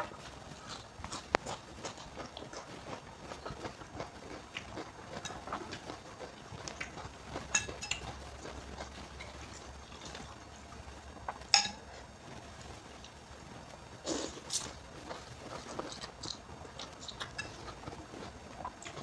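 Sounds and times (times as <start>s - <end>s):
chewing crunches: 0.0s - 10.4s, 14.0s - 19.0s
utensil clinking against bowl: 11.5s - 11.8s.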